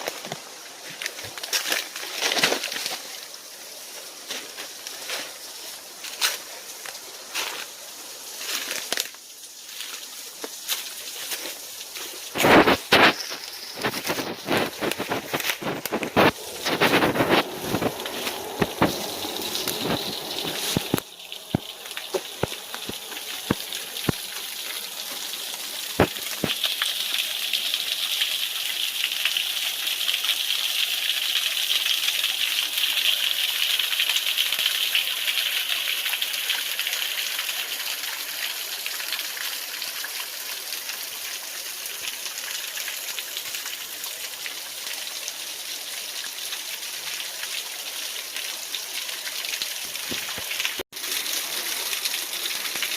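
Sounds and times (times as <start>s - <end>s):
waterfall roaring: 13.7s - 26.5s.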